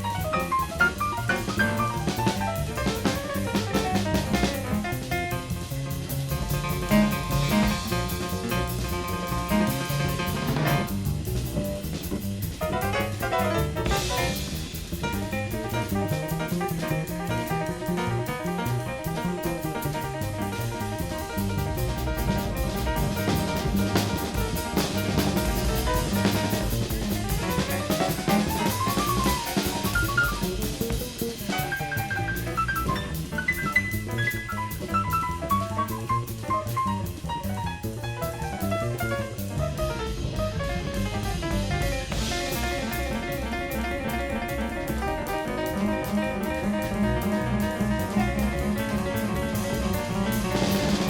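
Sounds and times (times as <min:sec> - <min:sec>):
double bass: 0:00.0 - 0:51.0
drum kit: 0:00.0 - 0:51.0
piano: 0:00.0 - 0:51.0.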